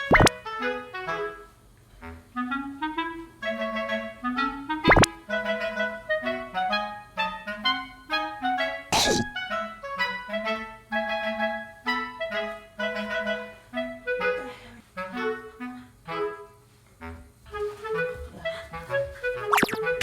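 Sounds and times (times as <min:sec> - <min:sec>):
bouncy wind instrument melody: 0:02.3 - 0:20.0.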